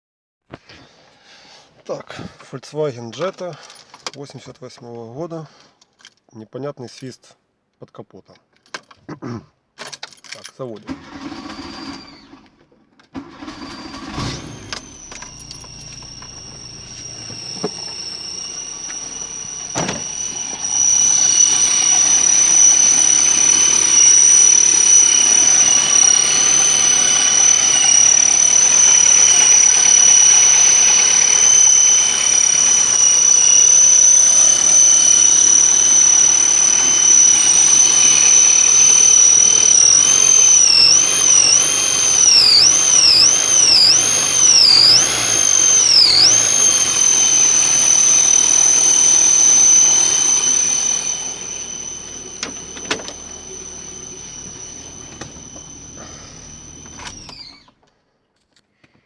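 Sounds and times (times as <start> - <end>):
car engine starting and running: 10.9 - 12.5, 13.2 - 57.7
high-pitched whistle under hood: 13.9 - 57.7.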